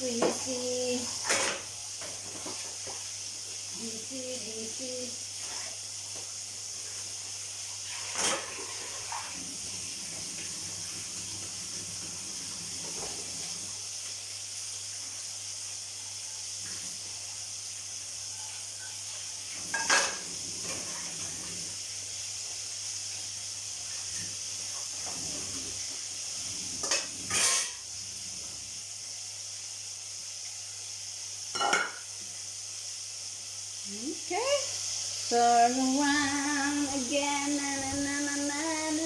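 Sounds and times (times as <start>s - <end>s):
steady hiss: 0.0s - 39.0s
kitchenware clattering: 1.2s - 3.0s, 8.0s - 9.3s, 19.6s - 21.3s, 26.8s - 27.8s, 31.5s - 32.1s.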